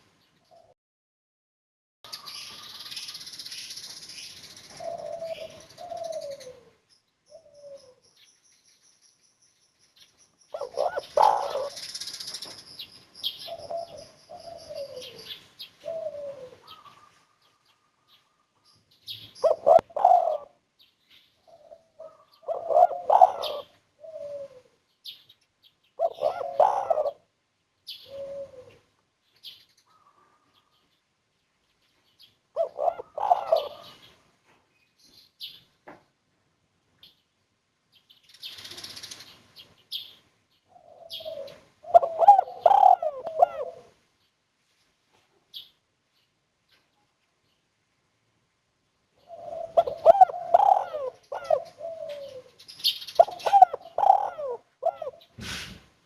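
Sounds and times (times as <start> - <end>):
small birds chirping: 0.0 - 0.8, 2.0 - 56.0
dove cooing: 4.7 - 8.1, 10.5 - 11.9, 13.4 - 18.5, 19.4 - 20.6, 21.4 - 24.8, 26.0 - 27.3, 27.9 - 28.9, 32.6 - 34.0, 40.7 - 44.0, 49.2 - 55.7.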